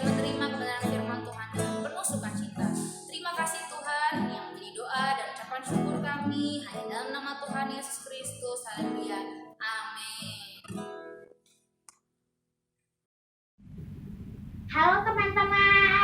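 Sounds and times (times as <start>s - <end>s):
strummed acoustic guitar: 0.0s - 9.5s, 10.2s - 11.4s
woman singing: 0.0s - 10.7s.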